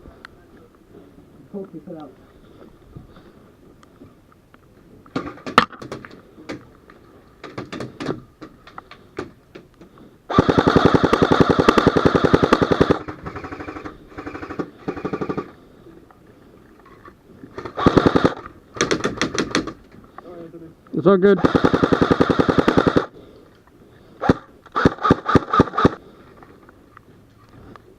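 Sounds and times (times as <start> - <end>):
airsoft guns firing: 10.3 - 15.6, 17.6 - 19.8, 21.4 - 23.1, 24.2 - 26.0.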